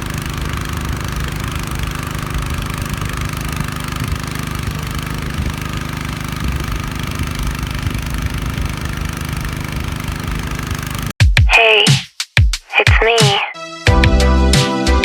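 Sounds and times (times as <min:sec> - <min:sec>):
boat engine running: 0:00.0 - 0:11.1
music: 0:11.2 - 0:15.0.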